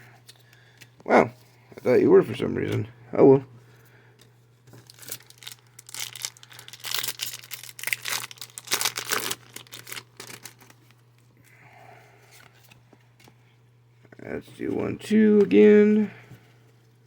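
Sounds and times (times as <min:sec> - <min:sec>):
foil wrapper crinkling and tearing: 0:04.7 - 0:11.2.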